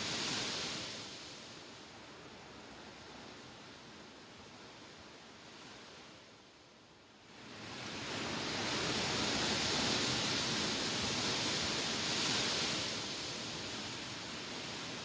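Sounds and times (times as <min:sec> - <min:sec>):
wind rustling tall grass: 0:00.0 - 0:15.0.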